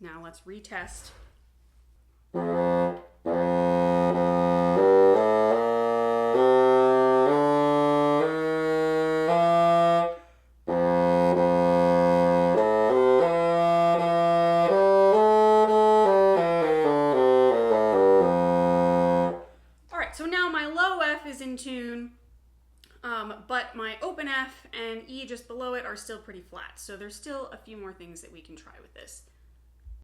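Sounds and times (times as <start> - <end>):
bassoon notes: 2.3 - 20.1.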